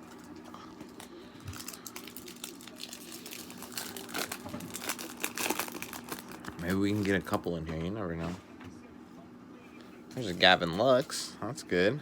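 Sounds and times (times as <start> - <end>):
foil wrapper crinkling and tearing: 0.9 - 7.2.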